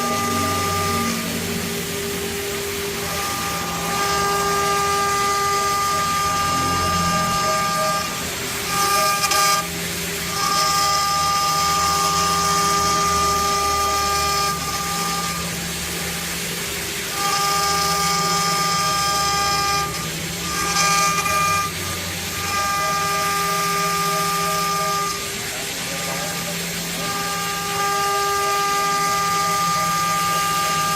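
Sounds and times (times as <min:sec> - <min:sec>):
stepper motors whining: 0:00.0 - 0:30.9.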